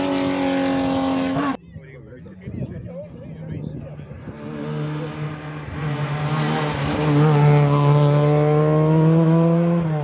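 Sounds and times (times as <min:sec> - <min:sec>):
rally car engine accelerating: 0:00.0 - 0:01.6, 0:04.2 - 0:10.0.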